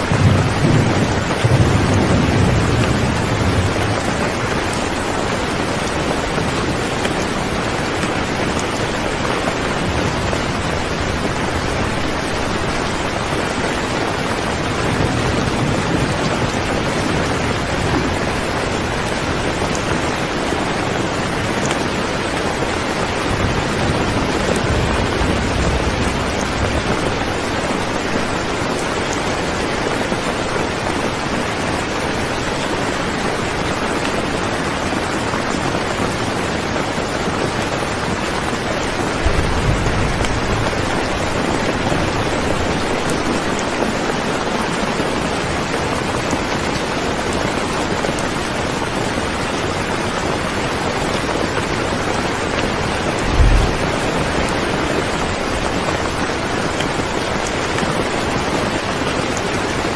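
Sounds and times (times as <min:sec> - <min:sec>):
steady rain falling: 0:00.0 - 0:59.9
low rumbling: 0:23.3 - 0:28.5, 0:38.8 - 0:43.6, 0:53.1 - 0:55.6.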